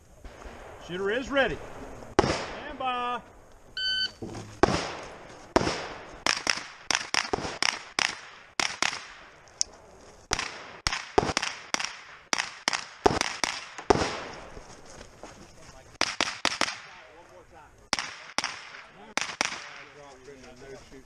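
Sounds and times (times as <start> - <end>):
rifle shots: 0.2 - 3.0, 4.5 - 9.4, 10.3 - 14.5, 16.0 - 17.1, 17.9 - 20.0.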